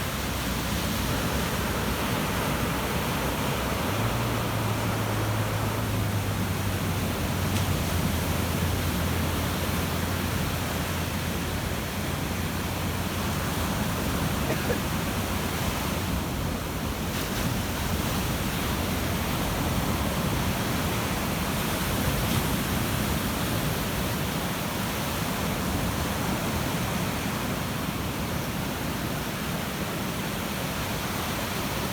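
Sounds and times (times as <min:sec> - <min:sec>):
ocean waves breaking on beach: 0:00.0 - 0:31.9.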